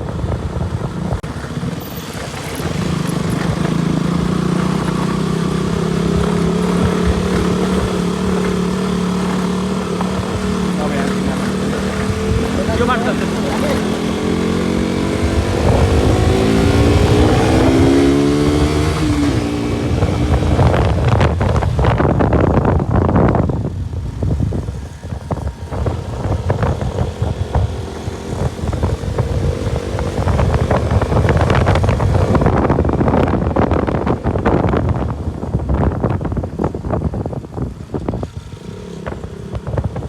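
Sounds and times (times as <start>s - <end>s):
motorcycle engine revving: 0.0s - 40.0s
knocks and rattles over rough ground: 0.1s - 20.5s, 35.8s - 40.0s.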